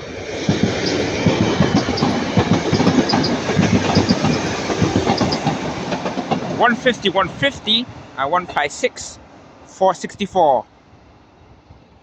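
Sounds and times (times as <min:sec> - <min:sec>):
train rumble: 0:00.0 - 0:12.0
train wheels clattering over rails: 0:00.2 - 0:09.1.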